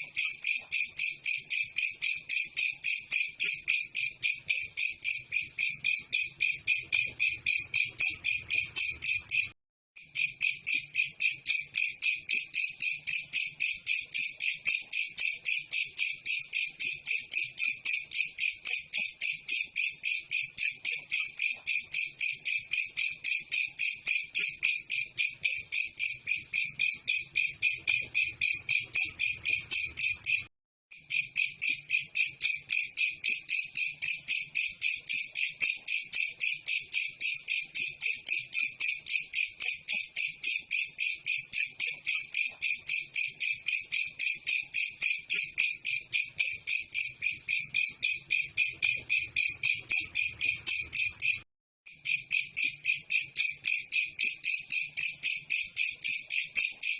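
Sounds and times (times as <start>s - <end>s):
katydid chirring: 4.0s - 9.5s, 24.1s - 30.5s, 45.9s - 51.4s.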